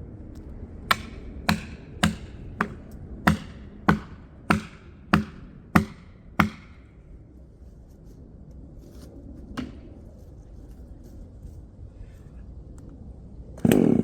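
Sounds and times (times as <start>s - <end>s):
sharp blows on wood: 0.9s - 6.9s.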